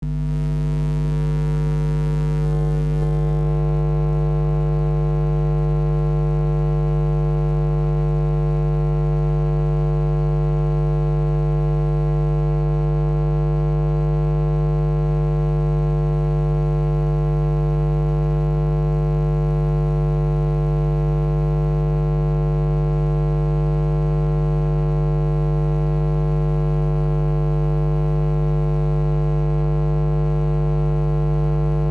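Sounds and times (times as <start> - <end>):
electrical hum: 0.0 - 3.7.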